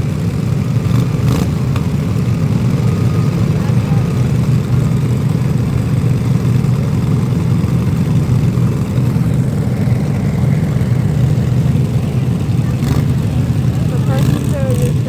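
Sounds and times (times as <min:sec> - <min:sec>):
engine rumbling: 0:00.0 - 0:15.0.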